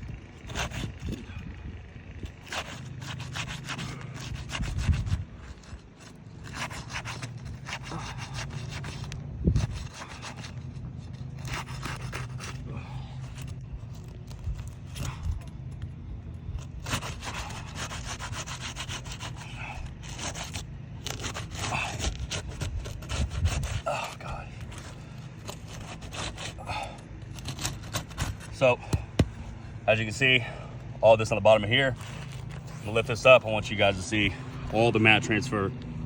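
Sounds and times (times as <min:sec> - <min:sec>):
tool scraping under roof shingle: 0:00.0 - 0:35.6
sharp knocks: 0:28.8 - 0:29.4.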